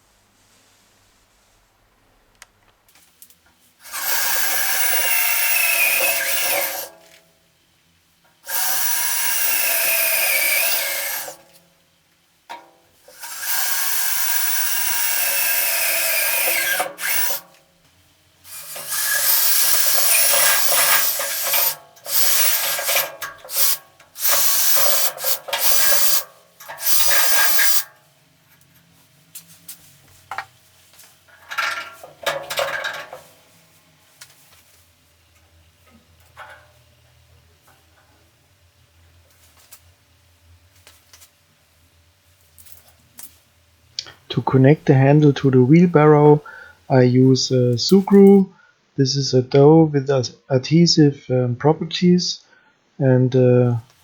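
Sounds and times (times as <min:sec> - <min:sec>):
electric drill running: 0:03.8 - 0:07.0, 0:08.4 - 0:11.4, 0:13.1 - 0:17.5, 0:18.5 - 0:27.9.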